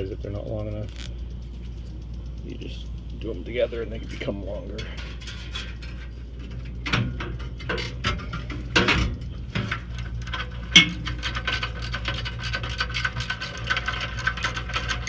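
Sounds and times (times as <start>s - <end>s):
zip ties ratcheting: 0.9s - 1.1s.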